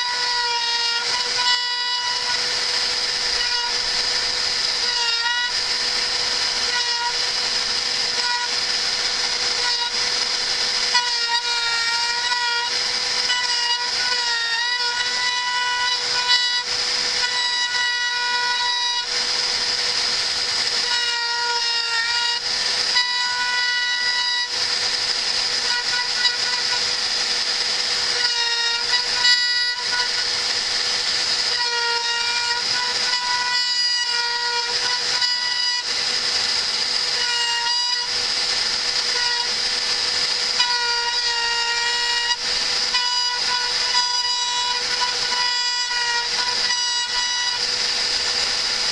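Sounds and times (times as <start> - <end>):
pitched machine whine: 0.0 - 48.9
router cutting hiss: 0.0 - 48.9.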